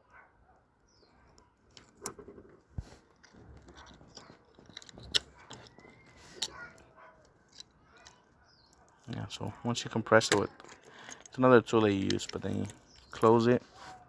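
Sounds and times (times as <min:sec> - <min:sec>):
metal clicks of watch parts: 0:03.1 - 0:13.6.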